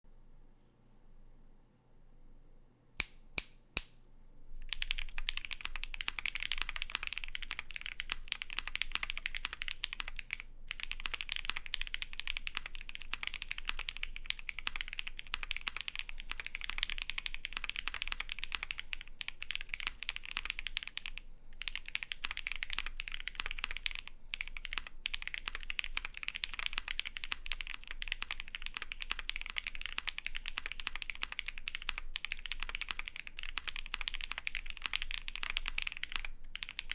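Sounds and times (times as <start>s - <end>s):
sharp clicks: 3.0s - 4.0s
mechanical keyboard typing: 4.6s - 36.9s.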